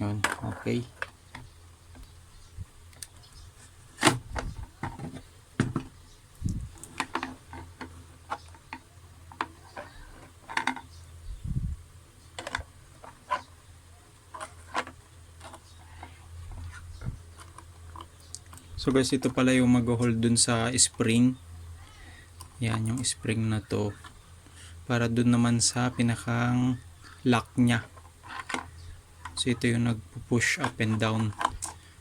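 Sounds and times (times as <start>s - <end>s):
faint low hum: 0.0s - 32.0s
plastic parts clicking: 6.7s - 11.0s, 12.4s - 13.4s, 14.3s - 19.4s, 27.7s - 29.6s, 30.4s - 31.9s.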